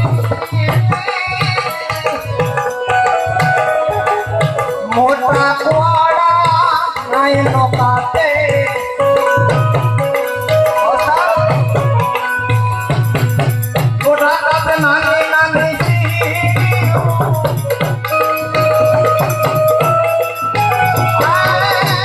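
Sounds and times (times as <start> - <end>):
devotional folk music: 0.0 - 22.0
hand percussion: 0.0 - 22.0
tabla beat: 0.0 - 22.0
wavering melodic line: 16.9 - 22.0.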